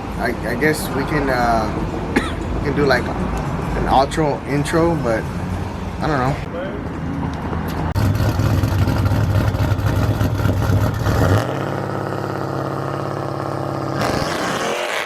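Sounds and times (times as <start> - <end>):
car engine idling: 8.0 - 14.0.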